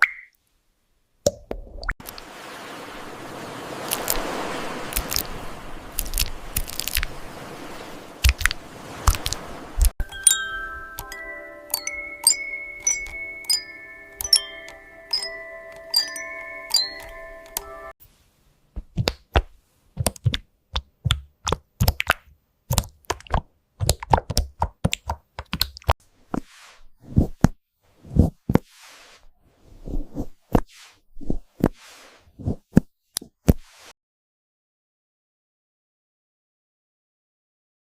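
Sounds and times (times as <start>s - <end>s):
keyboard typing: 10.0s - 17.7s
chime-like key tones: 10.0s - 18.0s
soft hissing swishes: 26.3s - 27.4s, 28.0s - 32.8s, 33.6s - 33.9s.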